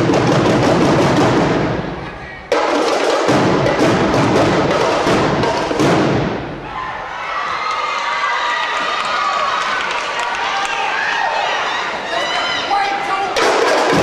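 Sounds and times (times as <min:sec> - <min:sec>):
marching drumline cadence: 0:00.0 - 0:07.6, 0:11.8 - 0:14.0.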